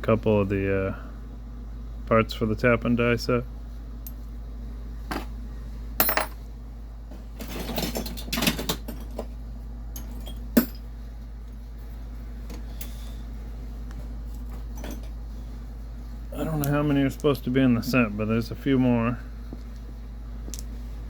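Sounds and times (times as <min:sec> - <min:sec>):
small metal tools clinking: 0:06.0 - 0:06.4.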